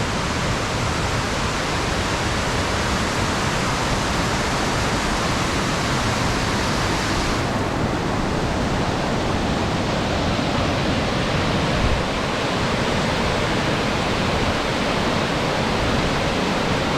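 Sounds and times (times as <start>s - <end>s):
waterfall rushing: 0.0s - 16.9s.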